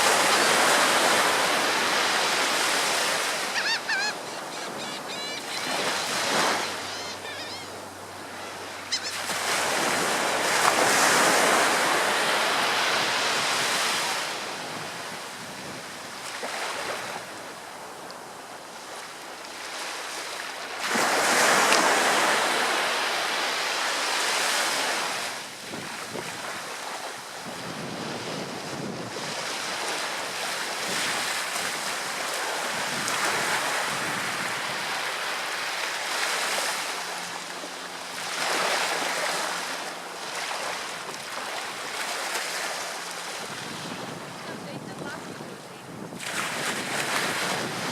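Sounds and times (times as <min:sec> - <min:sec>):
ocean surf breaking: 0:00.0 - 0:15.6, 0:26.2 - 0:47.9.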